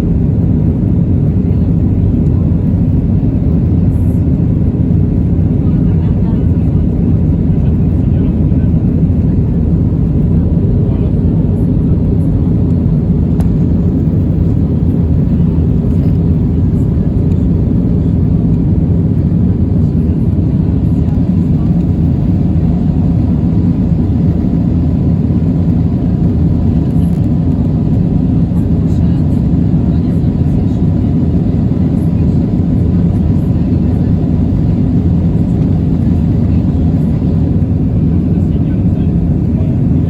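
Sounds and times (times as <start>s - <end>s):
jet engine cabin rumble: 0.0s - 40.0s.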